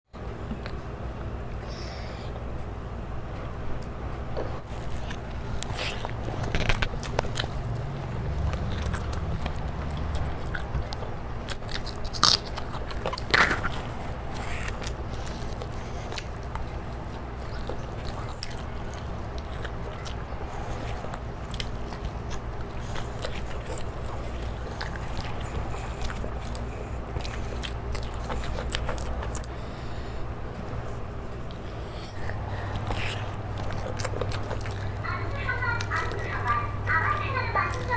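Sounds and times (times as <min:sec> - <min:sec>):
steady low hum: 0:00.1 - 0:37.9
person chewing food: 0:03.3 - 0:37.9.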